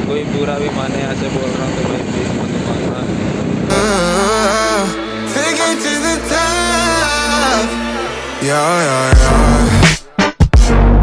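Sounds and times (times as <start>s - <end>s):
music with heavy bass and hard beat: 3.7s - 11.0s.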